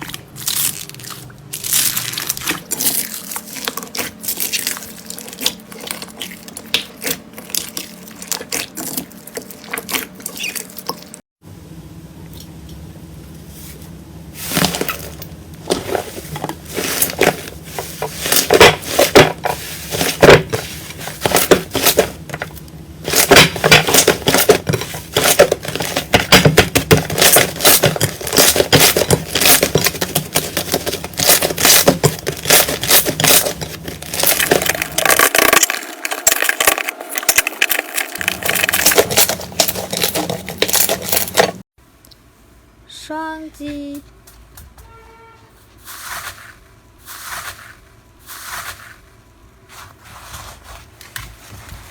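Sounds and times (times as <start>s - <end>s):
slime crackling and crunching: 0.0s - 11.1s, 23.1s - 41.6s.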